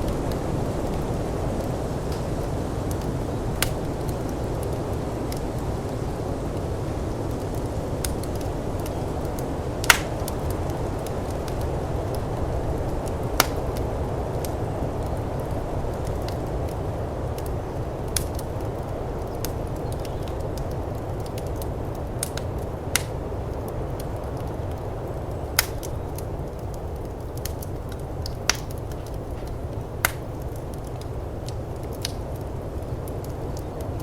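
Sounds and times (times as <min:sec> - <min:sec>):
low rush of wind: 0:00.0 - 0:34.0
wood fire crackling: 0:00.0 - 0:34.0.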